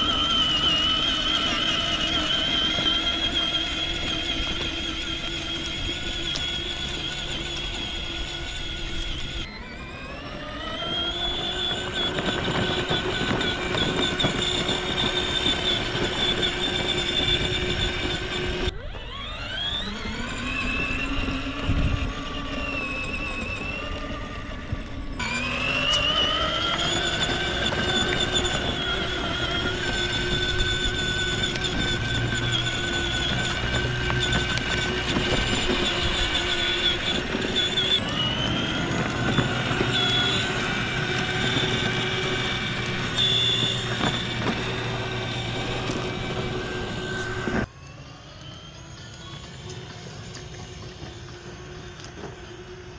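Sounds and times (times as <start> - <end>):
electric motor whine: 0.0 - 52.9.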